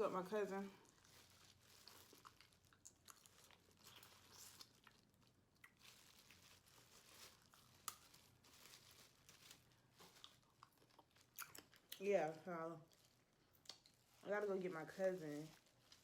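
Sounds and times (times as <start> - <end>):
small crackles: 0.4 - 16.0
person chewing: 0.8 - 5.9, 10.0 - 12.0, 12.9 - 14.1.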